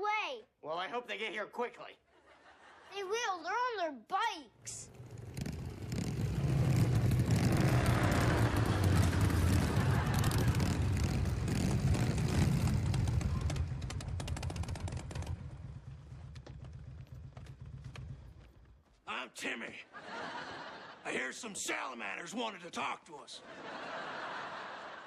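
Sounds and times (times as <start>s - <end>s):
motorcycle engines rumbling: 4.7s - 18.8s.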